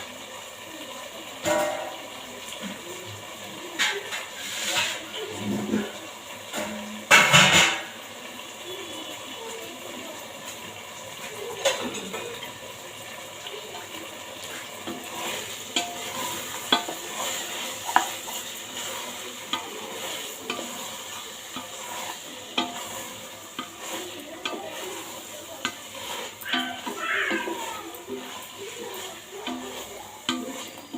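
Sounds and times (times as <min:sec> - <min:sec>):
food sizzling in a pot: 0:00.0 - 0:30.9
spoon knocking against a pot: 0:14.9 - 0:18.4, 0:22.5 - 0:23.8.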